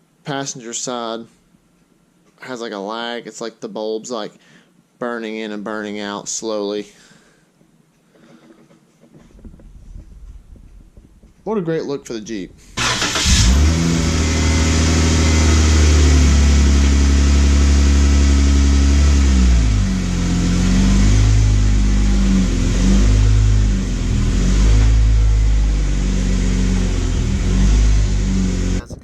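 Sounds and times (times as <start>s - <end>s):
car engine idling and revving: 12.8s - 28.8s.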